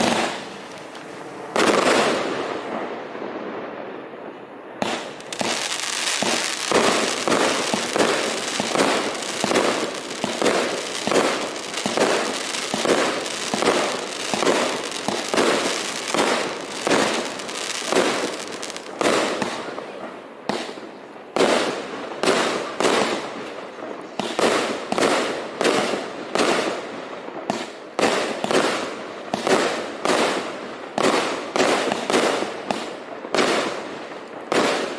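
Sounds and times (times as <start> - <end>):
firework cake shots: 0.0 - 2.3, 4.8 - 19.8.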